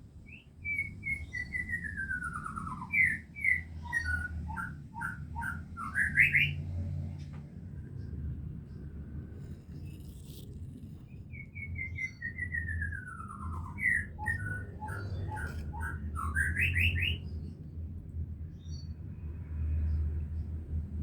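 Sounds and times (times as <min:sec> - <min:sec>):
bird singing: 0:00.2 - 0:06.7, 0:11.1 - 0:19.1
steady low rumble: 0:07.3 - 0:21.0.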